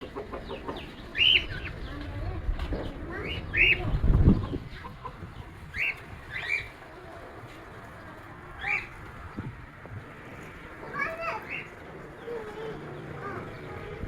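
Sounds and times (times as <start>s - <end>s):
bird chirping: 0.1s - 2.1s, 2.7s - 6.8s.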